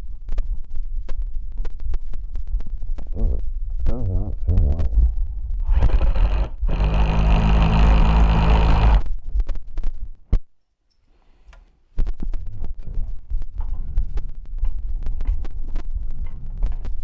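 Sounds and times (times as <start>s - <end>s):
low rumbling handling noise: 4.9s - 9.2s
power drill running: 5.6s - 9.1s.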